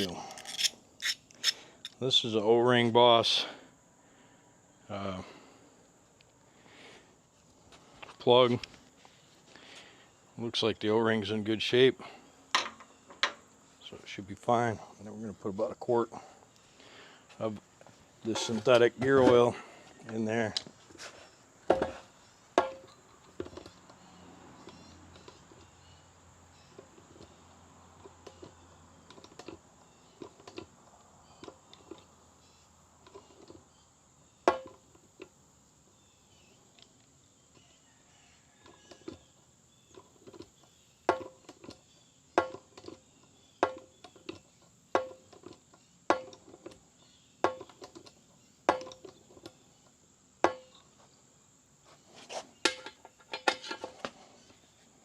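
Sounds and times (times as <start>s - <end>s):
hand pump clacking: 0.0s - 2.0s.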